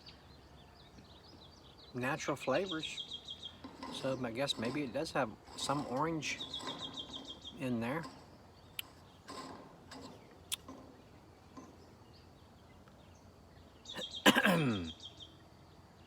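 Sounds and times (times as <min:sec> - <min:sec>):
faint clicks: 0:05.5 - 0:11.8.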